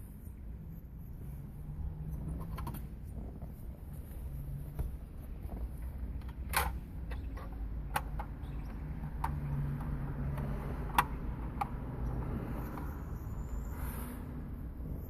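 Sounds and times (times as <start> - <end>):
sharp clicks and taps: 6.2 - 12.0.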